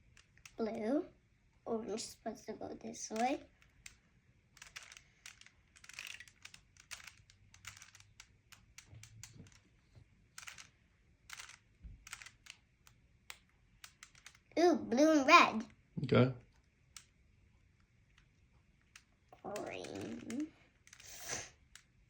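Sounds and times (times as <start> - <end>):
plastic puzzle cube clicking: 0.0 - 0.6, 3.0 - 14.5, 16.5 - 22.0.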